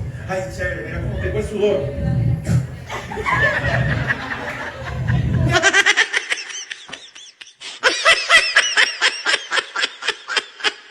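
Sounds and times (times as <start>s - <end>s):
low rumbling noise: 0.0s - 6.0s
murmur: 0.0s - 6.0s
person laughing hard: 2.9s - 10.9s.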